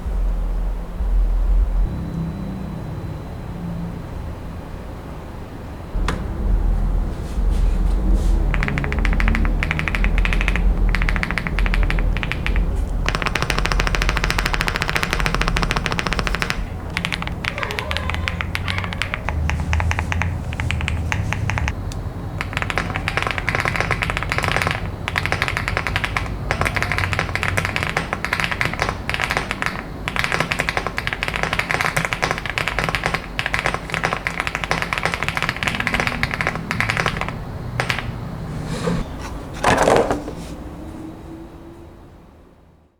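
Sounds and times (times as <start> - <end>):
steady low tone: 0.0 - 8.6
mechanical keyboard typing: 8.5 - 38.3.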